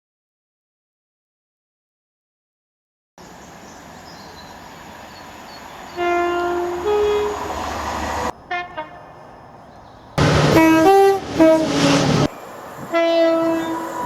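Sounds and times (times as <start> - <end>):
rumble of passing train: 3.2 - 14.0
two-tone train horn: 5.9 - 9.2, 10.2 - 12.3, 12.9 - 14.0.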